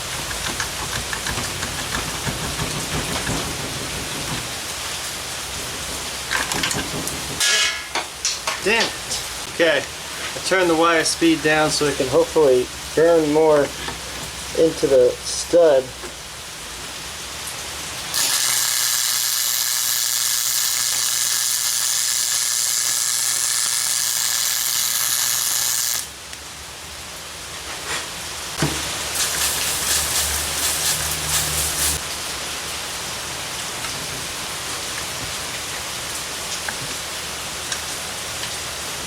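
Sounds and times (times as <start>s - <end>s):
welder arc crackling: 0.0s - 5.7s, 18.0s - 26.4s, 28.6s - 32.0s
mechanical buzz with clicking: 18.2s - 26.1s.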